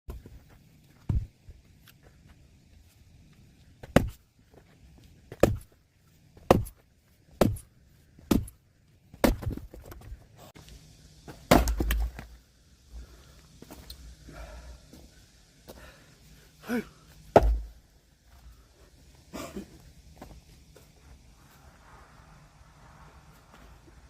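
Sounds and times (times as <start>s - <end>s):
axe striking firewood: 1.1s - 1.3s, 3.8s - 4.2s, 5.3s - 5.7s, 6.4s - 6.8s, 7.4s - 7.7s, 8.3s - 8.6s, 9.2s - 10.0s, 11.4s - 12.3s, 17.3s - 17.7s.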